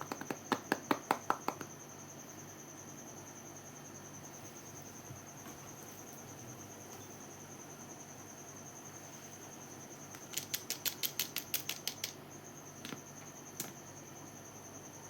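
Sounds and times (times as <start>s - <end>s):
sharp tapping clicks: 10.1s - 12.2s.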